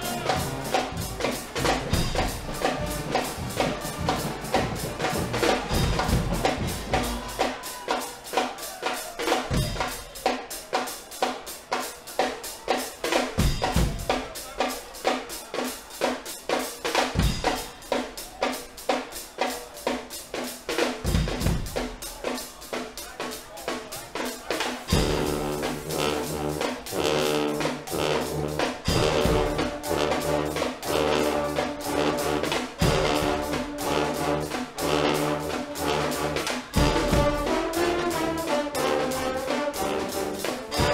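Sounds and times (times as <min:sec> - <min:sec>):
loud brass chords: 0:00.0 - 0:07.6, 0:24.9 - 0:40.9
snare and bass drum beating: 0:00.0 - 0:10.9, 0:20.6 - 0:23.2, 0:23.9 - 0:40.9.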